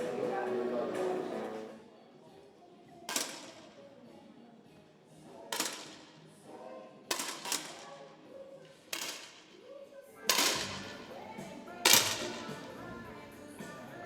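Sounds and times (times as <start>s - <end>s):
air rifle cracks: 10.3s - 11.0s, 11.8s - 12.6s.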